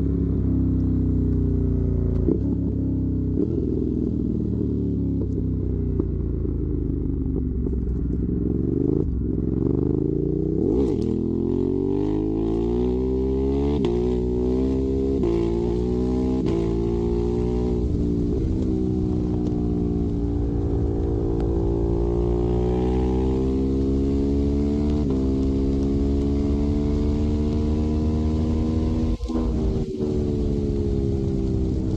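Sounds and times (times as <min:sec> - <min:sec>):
motorcycle engine accelerating: 0:00.0 - 0:31.9.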